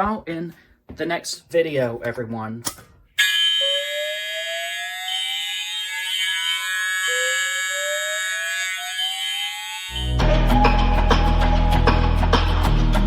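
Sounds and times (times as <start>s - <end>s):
fire alarm horn tone: 3.2s - 11.0s
slow rising alarm sweep: 3.2s - 13.0s.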